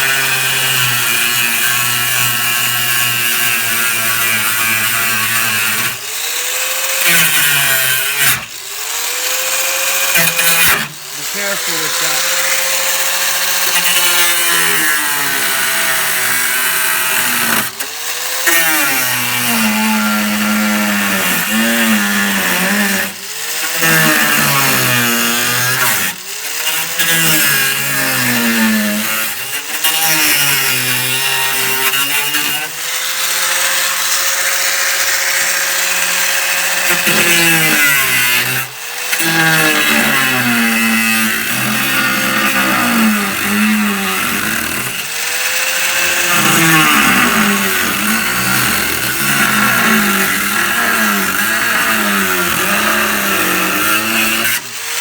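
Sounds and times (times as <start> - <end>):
cutoff tool whining: 0.0 - 55.0.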